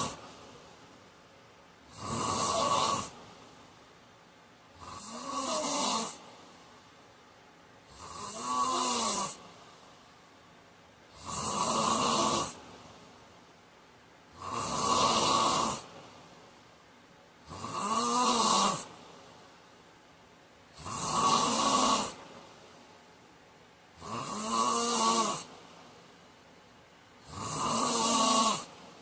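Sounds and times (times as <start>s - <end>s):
man snoring: 0.0s - 0.2s, 1.9s - 3.2s, 4.8s - 6.2s, 7.9s - 9.4s, 11.1s - 12.6s, 14.4s - 15.9s, 17.4s - 18.9s, 20.7s - 22.2s, 24.0s - 25.5s, 27.2s - 28.7s.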